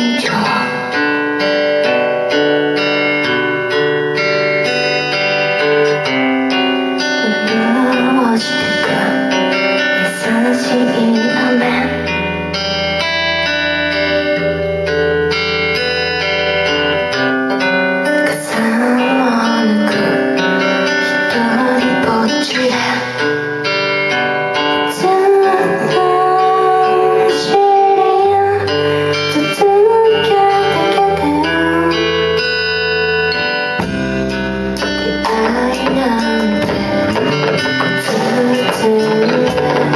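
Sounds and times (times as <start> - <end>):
band music led by guitars: 0.0 - 39.9
held bass notes: 28.1 - 39.9.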